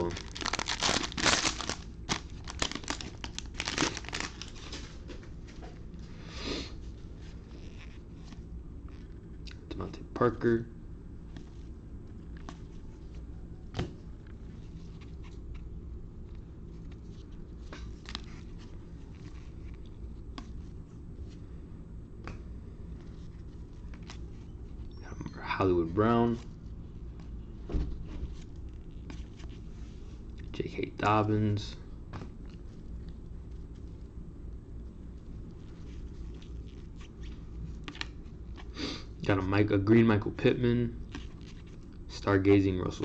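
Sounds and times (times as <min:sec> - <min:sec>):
plastic wrapper crinkling: 0:00.0 - 0:04.9
low background hum: 0:00.0 - 0:43.0
trading cards flipped by hand: 0:36.3 - 0:38.7.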